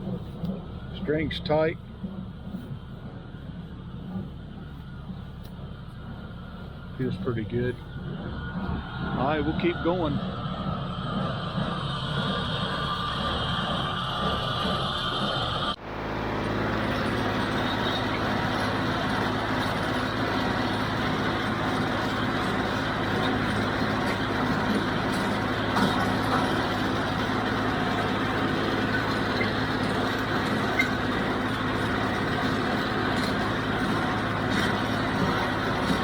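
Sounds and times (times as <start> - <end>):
square baler: 0.0 - 36.0
tractor running under load: 0.0 - 36.0.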